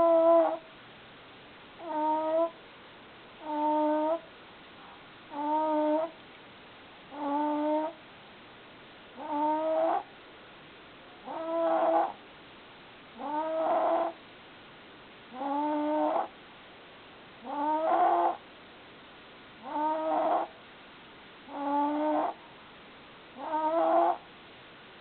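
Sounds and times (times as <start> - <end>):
high-pitched snoring: 11.3 - 12.2, 17.5 - 18.4, 19.7 - 20.5, 23.4 - 24.2.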